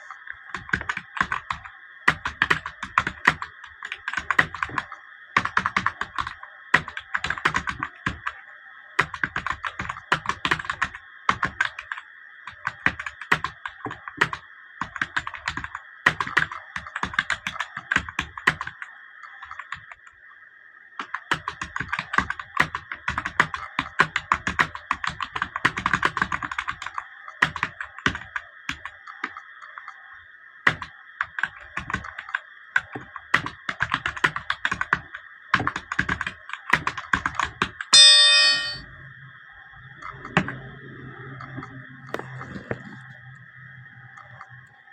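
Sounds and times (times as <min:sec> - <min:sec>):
fast typing on keyboard: 0:00.4 - 0:08.4, 0:09.0 - 0:20.1, 0:21.0 - 0:30.0, 0:30.7 - 0:37.9.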